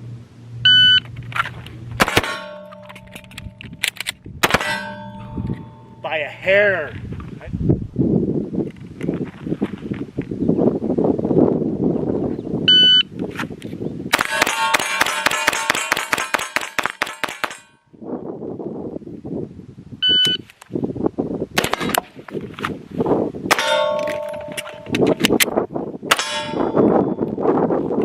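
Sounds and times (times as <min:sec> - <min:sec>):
sharp gunshot cracks: 0:02.0 - 0:02.7, 0:04.4 - 0:04.9
steel targets clanging: 0:02.0 - 0:06.2, 0:14.2 - 0:17.8, 0:23.5 - 0:25.2, 0:26.1 - 0:27.2
shot timer beeps: 0:20.0 - 0:20.4.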